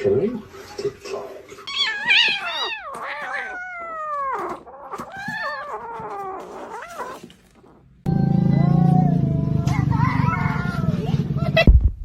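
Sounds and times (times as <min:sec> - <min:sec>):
kitten meowing: 0:01.7 - 0:09.0.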